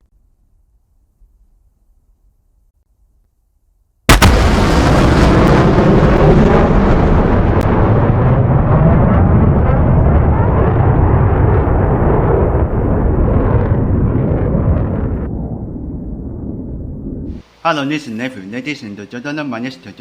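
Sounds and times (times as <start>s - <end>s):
explosion-like rumble: 4.1s - 17.4s
sudden blast: 4.1s - 17.4s.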